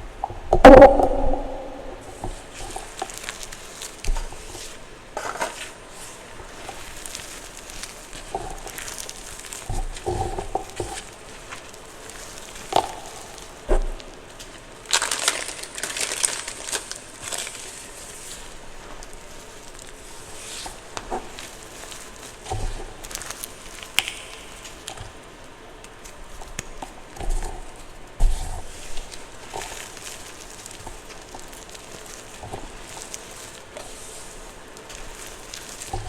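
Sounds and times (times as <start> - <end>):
chalk being crushed: 28.6 - 36.0.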